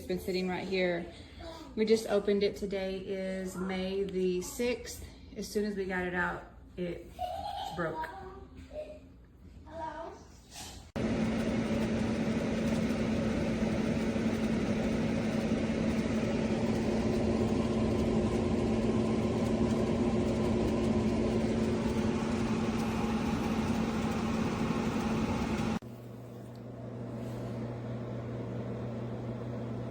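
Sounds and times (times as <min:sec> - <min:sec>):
air conditioner fan rushing air: 0:10.0 - 0:29.9
low hum: 0:11.0 - 0:29.9.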